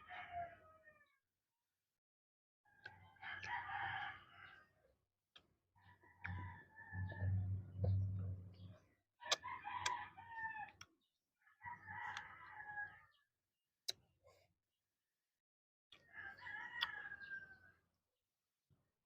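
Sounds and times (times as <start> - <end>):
rooster crowing: 0.0 - 1.2, 3.2 - 4.7, 6.2 - 8.4, 9.3 - 10.8, 11.6 - 13.2, 16.1 - 17.7.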